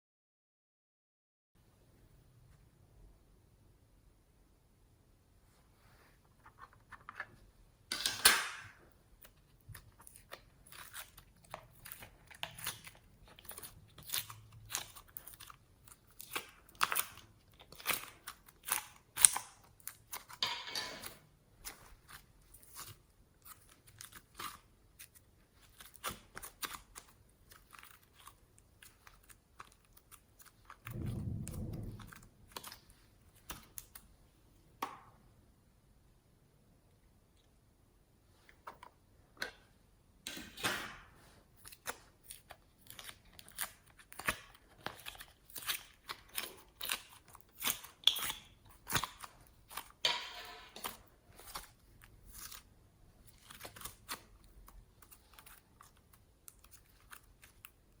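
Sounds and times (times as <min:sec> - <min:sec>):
slime squelch: 0:08.9 - 0:20.4, 0:21.0 - 0:34.8, 0:41.0 - 0:58.0
slime crackling and popping: 0:09.2 - 0:20.4, 0:41.6 - 0:58.0.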